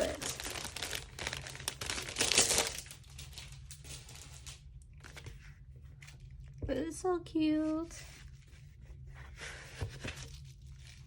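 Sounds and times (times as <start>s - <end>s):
packaging crinkling: 0.0s - 5.2s.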